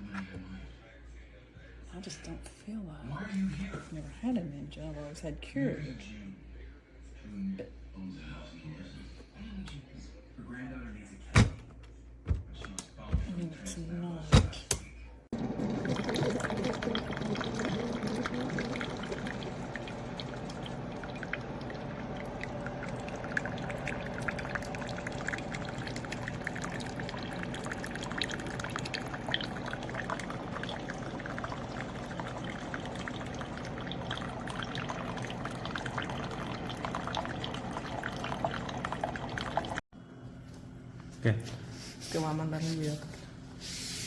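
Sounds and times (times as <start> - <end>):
coffee running into cup: 15.3 - 39.8.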